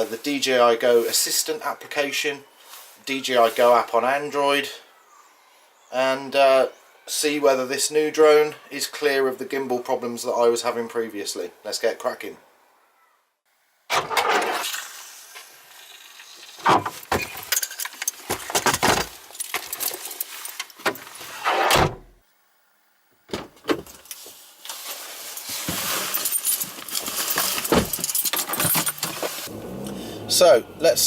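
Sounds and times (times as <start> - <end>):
rustling: 14.2 - 21.7, 23.4 - 30.5
objects clattering: 16.6 - 21.3, 23.5 - 29.5.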